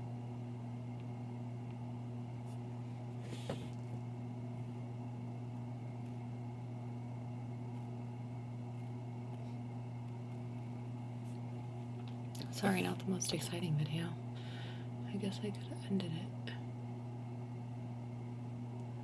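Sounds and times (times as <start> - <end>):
low motor hum: 0.0 - 19.0.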